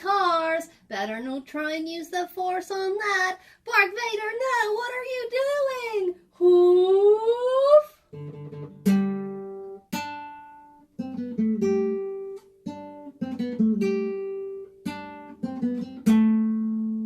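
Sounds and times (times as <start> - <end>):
acoustic guitar plucked and strummed: 0.0 - 3.2, 8.1 - 17.0.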